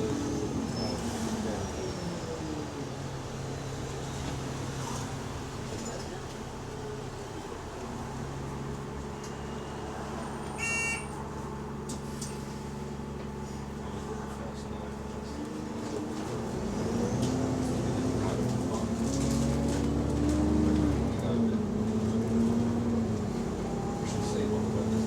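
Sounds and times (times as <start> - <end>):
bus engine running: 0.0 - 25.0
electronic bell tone: 10.6 - 11.1.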